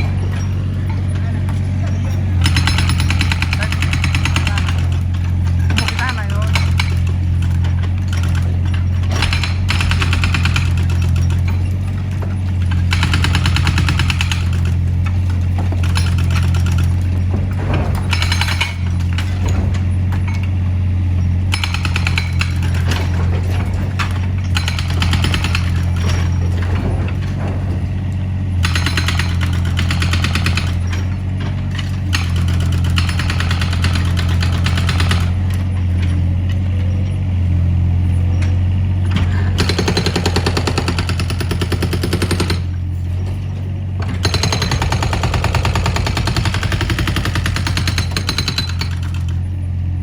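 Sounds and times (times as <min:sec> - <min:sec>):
excavator diesel engine running: 0:00.0 - 0:50.0.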